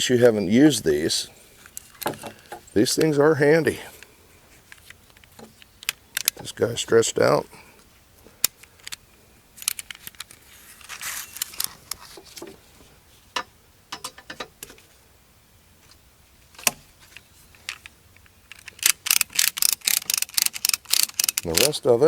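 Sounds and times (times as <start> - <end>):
metal clicks and clinks: 18.5 - 21.8
ratchet strap clicking: 18.5 - 21.8.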